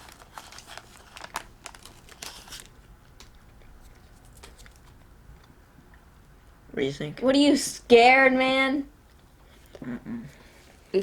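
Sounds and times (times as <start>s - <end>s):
faint crinkling and crackling: 0.0s - 5.5s.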